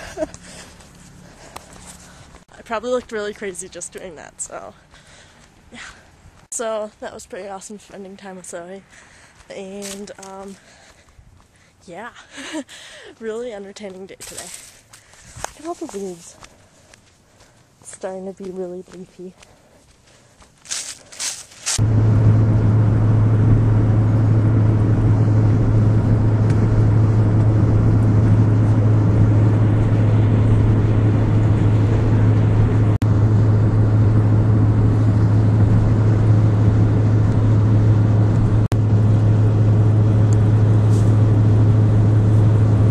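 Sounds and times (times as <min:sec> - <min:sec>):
car cabin engine and road drone: 0:21.6 - 0:42.9.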